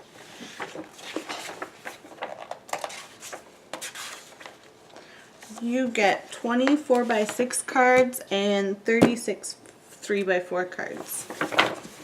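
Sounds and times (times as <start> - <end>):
paper rustling: 0.1 - 4.8, 11.0 - 12.0.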